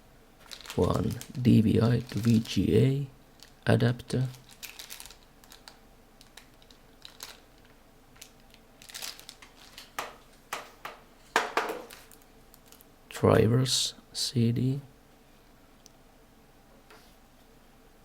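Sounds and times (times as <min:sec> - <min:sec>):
plastic packaging crinkling: 0:00.4 - 0:10.8, 0:11.4 - 0:12.9.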